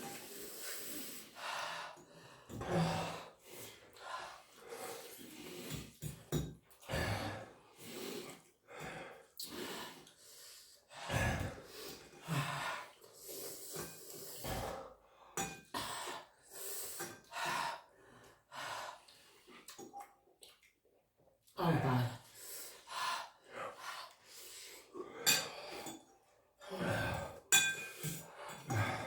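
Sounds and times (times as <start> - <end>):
heavy ragged breathing with gasps: 6.8 - 19.7, 22.2 - 29.0.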